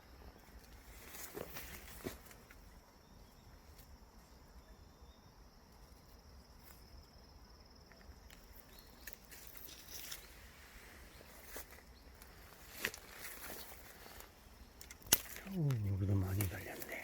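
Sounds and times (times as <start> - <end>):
insect trilling: 11.2 - 17.0.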